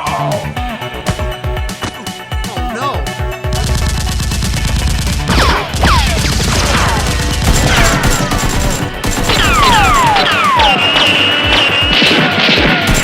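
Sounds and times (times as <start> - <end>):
background music: 0.0 - 13.0
rapid gunfire sound effects: 3.4 - 13.0
falling whistling tones: 9.3 - 12.4.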